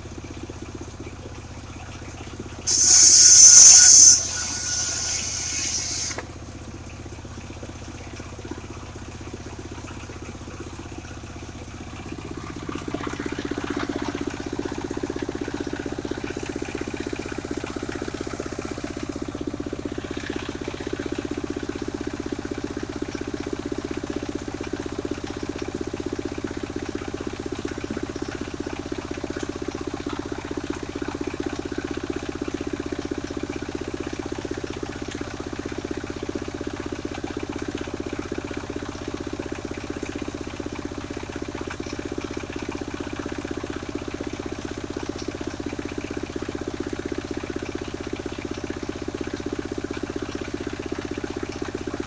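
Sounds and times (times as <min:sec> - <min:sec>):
sawmill engine humming: 0:02.7 - 0:06.3.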